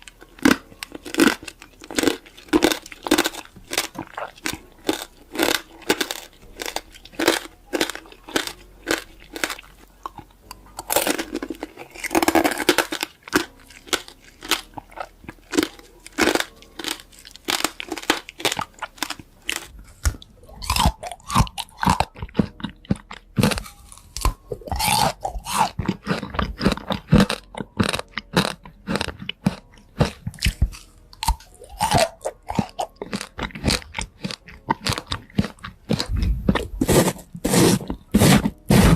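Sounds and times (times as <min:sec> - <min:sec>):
crunchy chewing of crisp fruit: 0:00.0 - 0:38.9.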